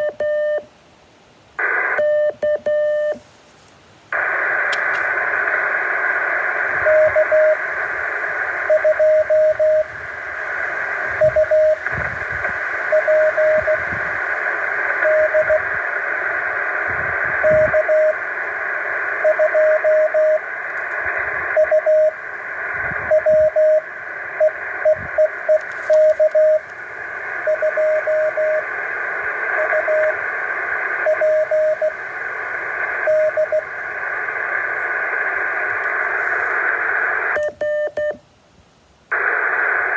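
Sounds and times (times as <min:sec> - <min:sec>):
radio static hiss: 0:00.0 - 0:39.9
morse code tone: 0:02.0 - 0:03.2, 0:06.8 - 0:07.6, 0:08.6 - 0:09.9, 0:11.1 - 0:14.0, 0:14.9 - 0:15.7, 0:17.4 - 0:18.3, 0:19.2 - 0:20.4, 0:21.6 - 0:22.2, 0:23.1 - 0:23.8, 0:24.4 - 0:26.7, 0:27.4 - 0:28.7, 0:29.5 - 0:30.2, 0:31.0 - 0:32.0, 0:33.0 - 0:33.7, 0:37.4 - 0:38.2.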